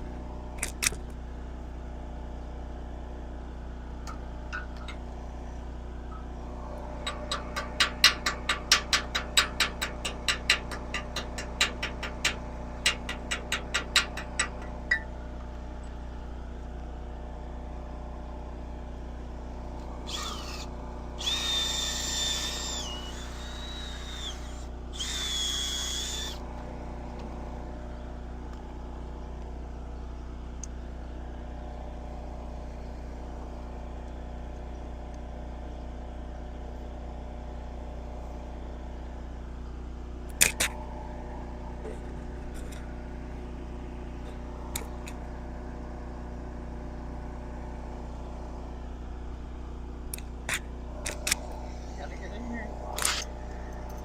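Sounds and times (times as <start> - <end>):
low mechanical hum: 0.0 - 54.0
sharp metallic clicks: 7.0 - 15.1, 40.3 - 40.8, 50.1 - 51.6, 52.9 - 53.3
power tool high-pitched whine: 19.9 - 26.4.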